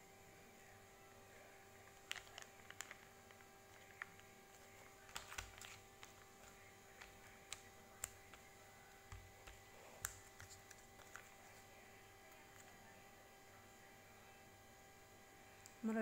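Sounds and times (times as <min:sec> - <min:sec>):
faint steady hum: 0:00.0 - 0:16.0
packaging clicks and taps: 0:02.0 - 0:11.5.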